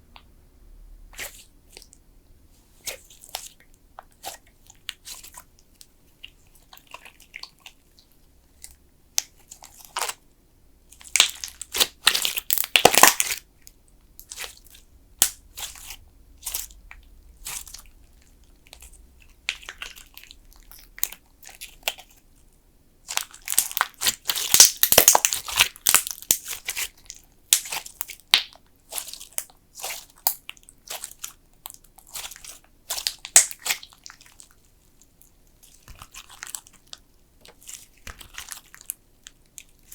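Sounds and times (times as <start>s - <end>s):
slime squeezed by hand crackling: 11.0s - 13.4s, 23.1s - 31.2s, 32.1s - 34.4s.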